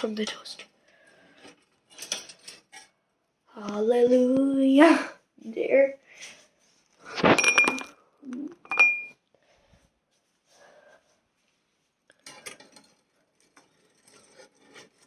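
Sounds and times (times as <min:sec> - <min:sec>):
faint scraping and rattling: 0:00.0 - 0:03.1, 0:09.7 - 0:15.0
metal knife clinking on kitchenware: 0:08.7 - 0:09.1.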